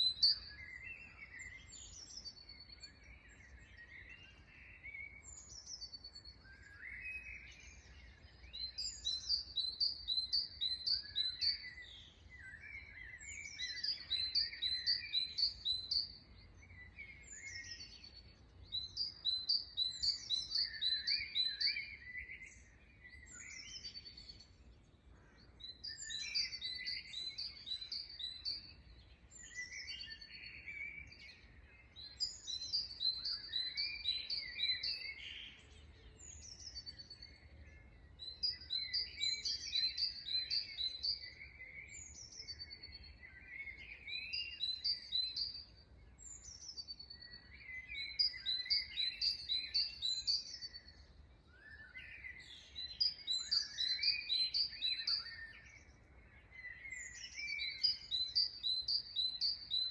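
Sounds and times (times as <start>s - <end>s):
songbirds chirping and singing: 0.0s - 59.9s.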